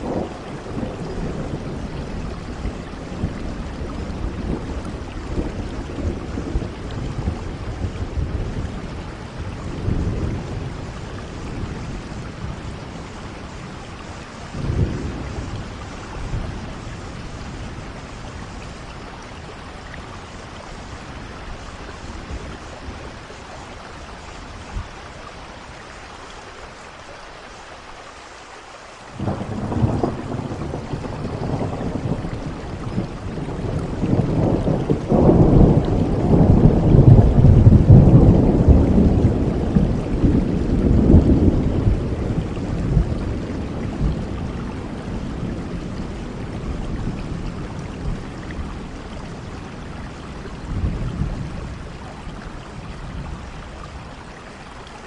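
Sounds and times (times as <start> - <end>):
heavy rain hiss: 0.0 - 55.0
thunder rolling: 29.2 - 49.0.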